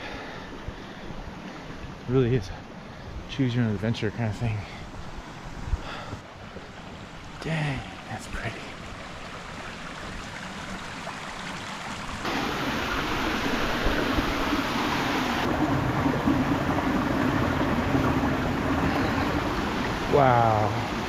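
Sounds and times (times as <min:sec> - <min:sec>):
creek water rushing over rocks: 0:06.3 - 0:21.0.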